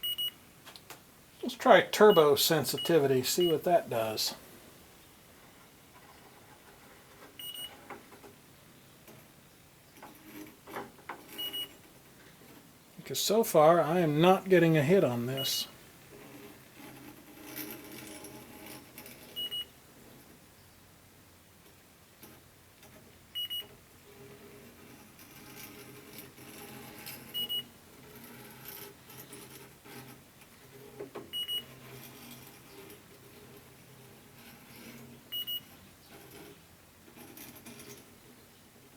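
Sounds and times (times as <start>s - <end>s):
short high beeps: 0.0s - 0.4s, 2.1s - 3.7s.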